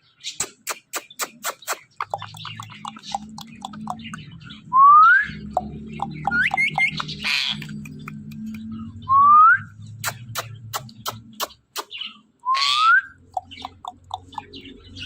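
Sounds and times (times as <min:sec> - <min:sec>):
parrot clicking: 0:00.4 - 0:04.2, 0:05.5 - 0:08.7, 0:10.0 - 0:11.9, 0:13.2 - 0:14.8
parrot chirping: 0:00.4 - 0:08.7, 0:09.9 - 0:15.0
parrot squawk: 0:11.8 - 0:14.6.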